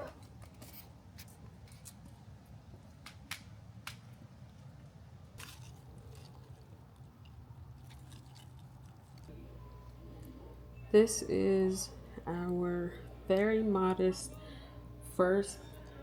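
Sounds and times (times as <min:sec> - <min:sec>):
low steady hum: 0:03.6 - 0:16.0.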